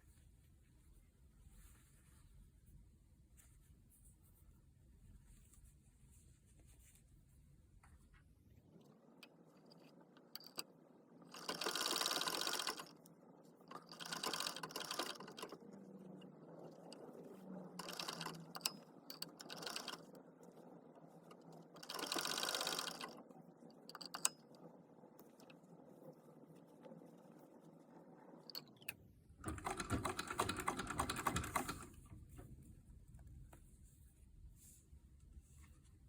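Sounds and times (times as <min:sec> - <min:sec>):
small clicks and handling noises: 0:07.8 - 0:11.6, 0:12.8 - 0:27.6
sewing machine stitching: 0:08.7 - 0:32.2.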